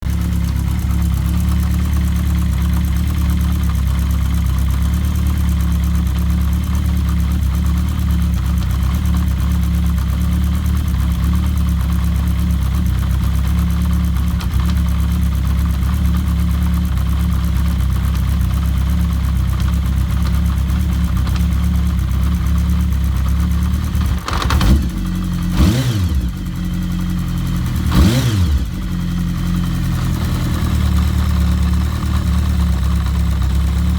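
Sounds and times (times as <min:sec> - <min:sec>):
motorcycle engine idling: 0:00.0 - 0:33.9
engine revving: 0:23.9 - 0:32.4.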